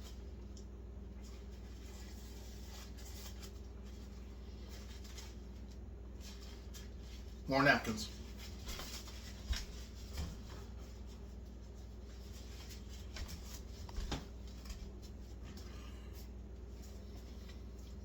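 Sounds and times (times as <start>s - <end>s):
paper napkins rustling: 0.0s - 18.0s
steady low hum: 0.0s - 18.0s.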